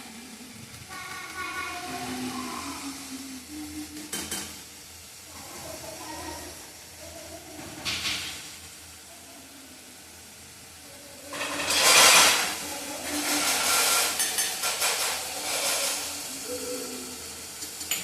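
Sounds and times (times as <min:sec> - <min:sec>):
crackling of cooking food: 0:00.0 - 0:18.0
food hissing on a stove: 0:00.0 - 0:18.0.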